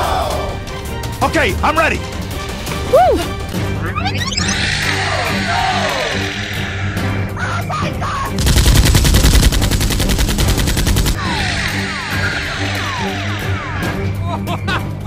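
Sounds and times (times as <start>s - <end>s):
background music: 0.0s - 15.0s
machine-gun fire: 8.4s - 11.2s.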